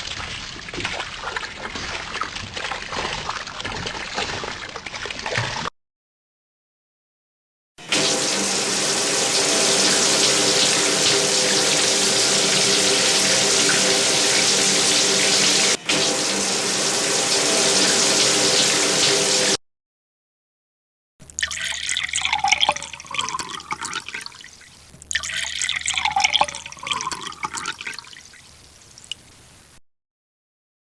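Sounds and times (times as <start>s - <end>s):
water pouring and gurgling: 0.0s - 5.7s, 7.8s - 19.6s, 21.2s - 29.2s
water running in stream: 0.0s - 5.7s, 7.9s - 19.6s.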